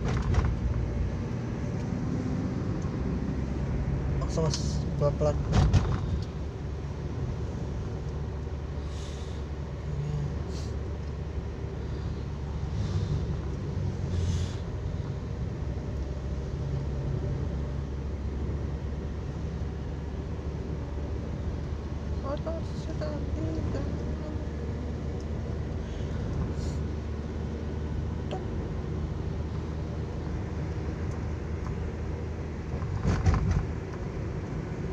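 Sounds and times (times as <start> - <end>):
car engine and road noise: 0.0 - 34.9
loud thump: 5.5 - 6.0.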